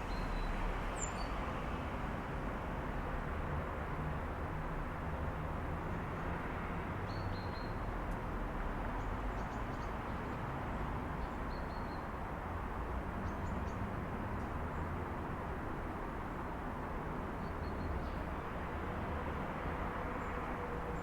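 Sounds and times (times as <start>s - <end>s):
distant city traffic rumble: 12.2s - 21.0s.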